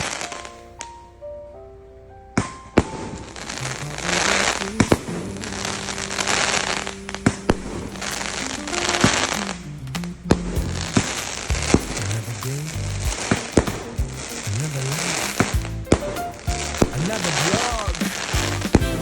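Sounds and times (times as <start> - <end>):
firework crackling: 0.0 - 0.9, 3.3 - 19.0
music playing: 2.7 - 19.0
firework bangs: 10.6 - 19.0.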